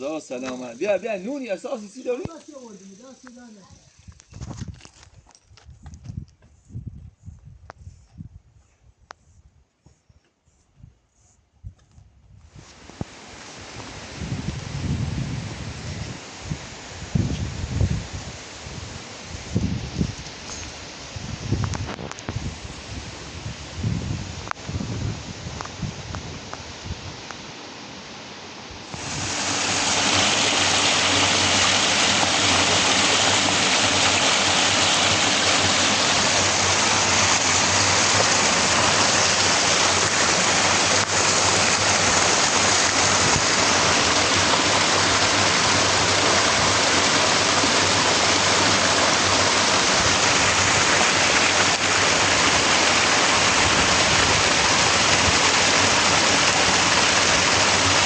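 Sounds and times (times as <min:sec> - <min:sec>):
water rushing: 0:12.7 - 0:15.4, 0:28.8 - 0:58.0.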